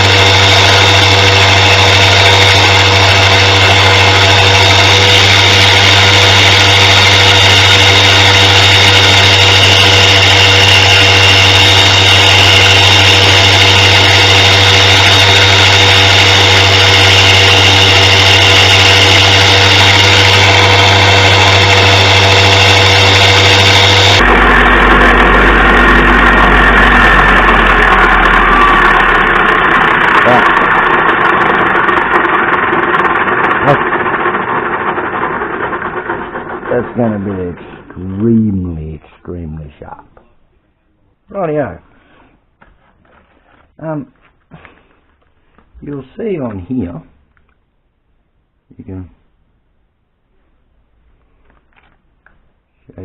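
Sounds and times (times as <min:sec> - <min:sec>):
electric grinder humming: 0:00.0 - 0:38.2.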